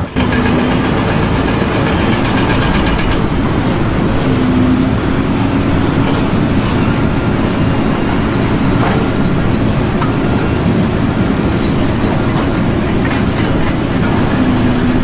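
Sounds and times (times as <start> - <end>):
faint hum: 0.0 - 15.0
loud mechanical rumble: 0.0 - 15.0.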